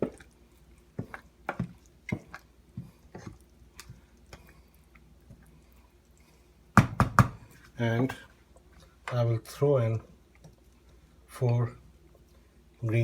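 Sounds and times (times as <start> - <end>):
spoon stirring in a pot: 0.0 - 6.1
spoon knocking against pot: 6.8 - 7.4.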